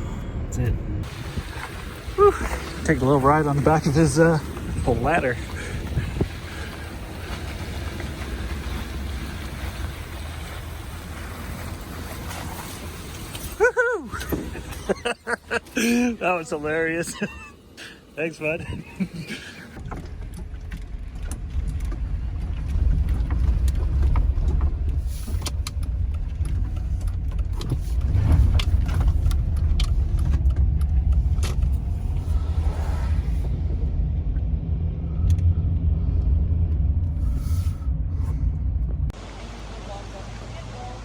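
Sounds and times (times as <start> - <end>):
engine and road rumble: 0.0 - 41.0
light clicks and rattles: 19.7 - 32.3.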